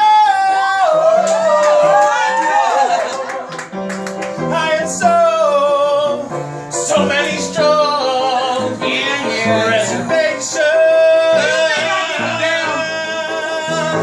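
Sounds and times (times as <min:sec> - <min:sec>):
person singing over backing track: 0:04.4 - 0:14.0.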